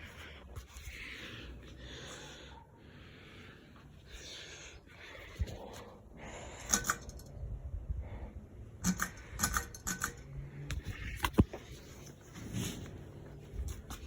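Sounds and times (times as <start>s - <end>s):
camera handling clicks and rattles: 6.6s - 7.3s, 8.8s - 11.6s.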